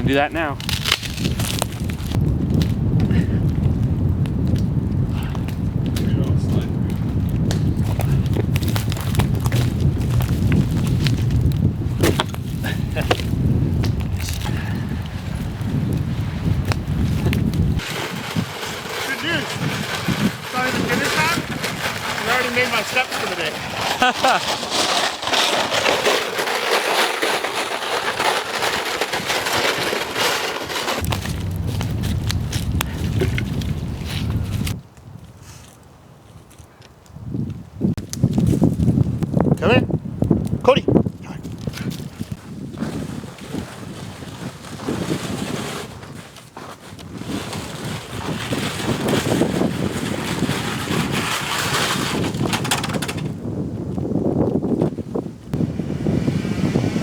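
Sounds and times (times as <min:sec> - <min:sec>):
wind rumble on microphone: 0:00.0 - 0:57.0
campfire crackling: 0:00.6 - 0:36.0.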